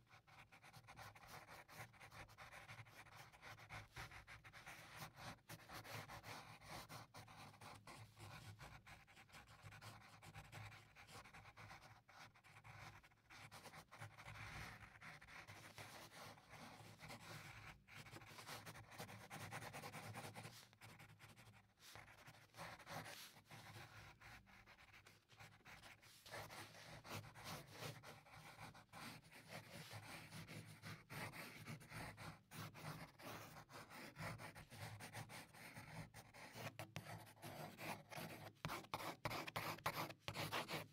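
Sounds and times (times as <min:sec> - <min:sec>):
pencil scratching on paper: 0:00.0 - 0:40.9.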